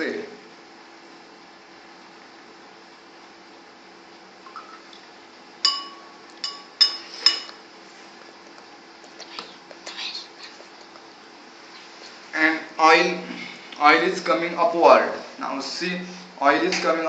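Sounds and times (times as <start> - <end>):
glassware clinking: 4.5 - 4.9, 5.6 - 7.6.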